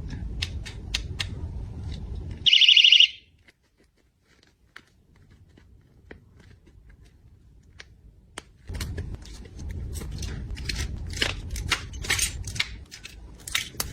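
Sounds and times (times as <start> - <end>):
packing material crinkling: 3.3 - 7.8.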